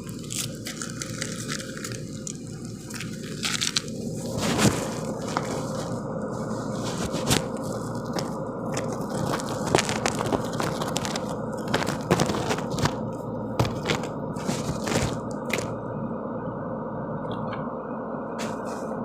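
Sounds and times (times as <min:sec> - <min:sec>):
rock cracking and crunching: 0:00.0 - 0:05.5, 0:07.2 - 0:15.8
excavator engine running: 0:00.0 - 0:17.8.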